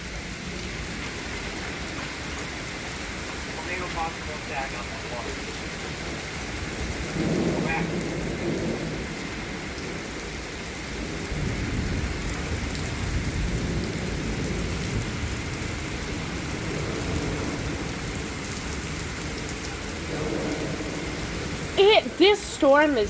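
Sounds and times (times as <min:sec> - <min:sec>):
heavy rain: 0:00.0 - 0:23.0
strong wind: 0:10.8 - 0:23.0.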